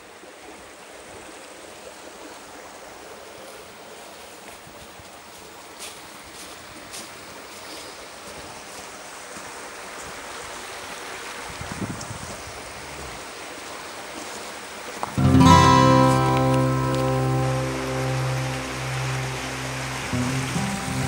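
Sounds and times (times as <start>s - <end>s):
river flowing: 0.0s - 11.7s, 12.3s - 21.0s
background music: 15.2s - 21.0s.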